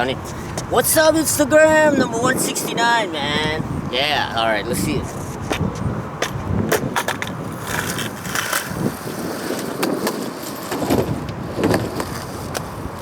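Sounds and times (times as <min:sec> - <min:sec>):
skateboard wheels rolling on pavement: 0:00.0 - 0:13.0
skateboard clacking: 0:05.4 - 0:13.0.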